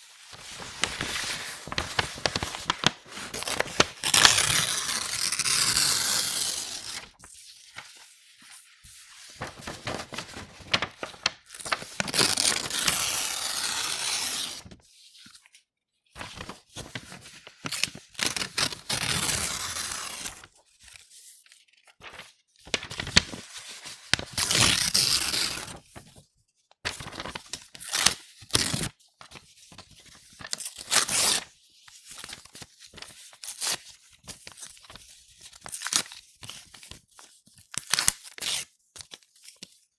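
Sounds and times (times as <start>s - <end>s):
paper rustling: 0.0s - 15.5s, 16.2s - 26.2s, 26.9s - 27.6s
paper being torn by hand: 0.8s - 7.1s, 9.4s - 14.7s, 17.6s - 20.5s, 24.2s - 25.8s.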